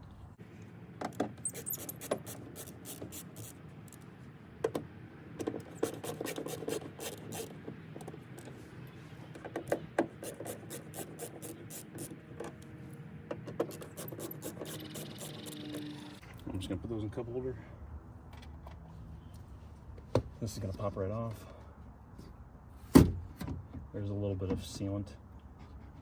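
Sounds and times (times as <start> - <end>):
screwdriver clicks and scrapes: 1.1 - 4.0, 5.4 - 7.6, 10.2 - 12.6, 13.5 - 16.2.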